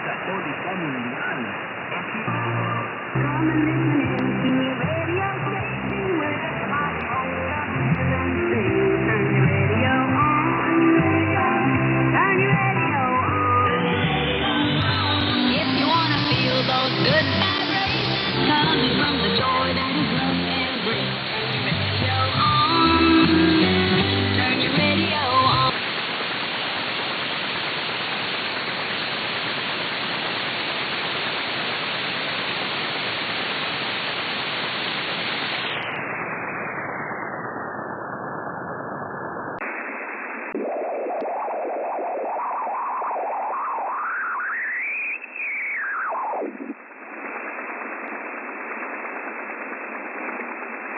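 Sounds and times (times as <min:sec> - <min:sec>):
shortwave radio static hiss: 0:00.0 - 0:50.9
warbling radio whistle: 0:35.4 - 0:48.2.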